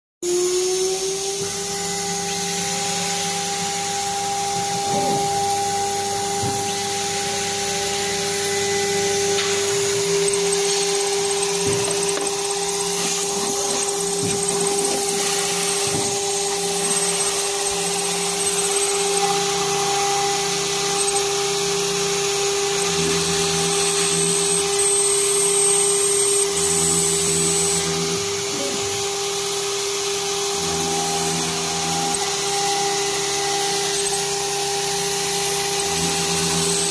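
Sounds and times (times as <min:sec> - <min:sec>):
spindle high-pitched whine: 0:00.3 - 0:36.9
lower machine tones: 0:00.4 - 0:29.1.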